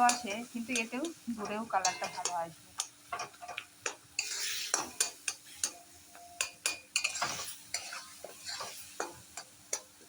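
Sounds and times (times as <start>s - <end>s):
light sizzle: 0.0s - 10.0s
spatula scraping pan: 3.2s - 5.8s, 6.4s - 9.5s.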